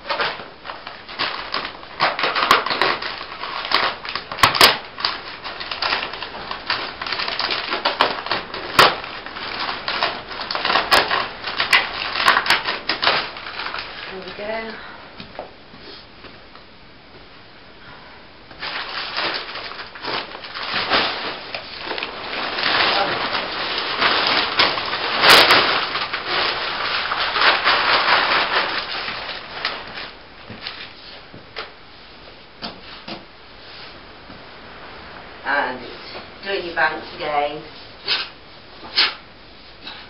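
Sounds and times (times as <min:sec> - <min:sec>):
wood shavings rustling and crackling: 0:00.0 - 0:14.8, 0:18.5 - 0:31.7.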